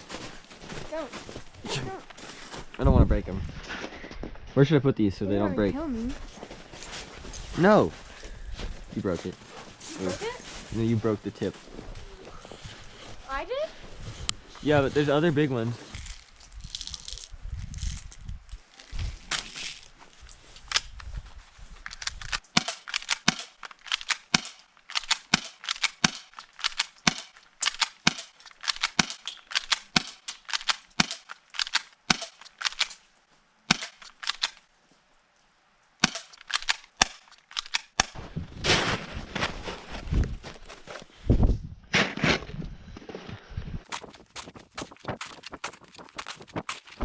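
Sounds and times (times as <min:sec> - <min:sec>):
footsteps crunching on icy snow: 0:00.0 - 0:02.8, 0:06.1 - 0:21.8, 0:38.2 - 0:41.2, 0:42.0 - 0:47.0.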